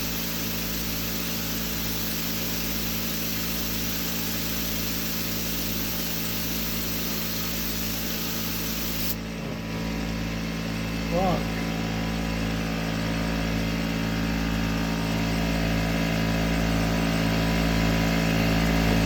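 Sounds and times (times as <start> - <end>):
high hiss: 0.0 - 9.2
turbine hum: 0.0 - 9.9.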